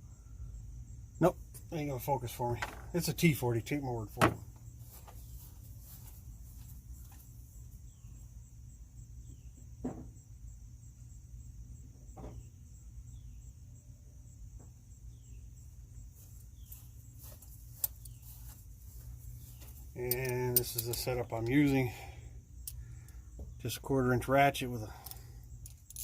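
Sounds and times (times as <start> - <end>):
low steady hum: 0.0 - 26.0
hand tools clicking and knocking: 19.6 - 21.9.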